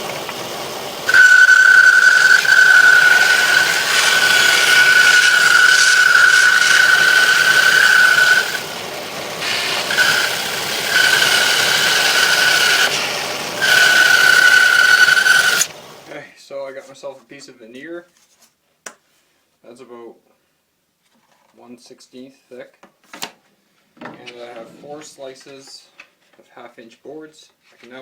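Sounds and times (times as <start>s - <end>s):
bandsaw whine: 0.0s - 16.1s
saw blade rasping through wood: 1.0s - 16.1s.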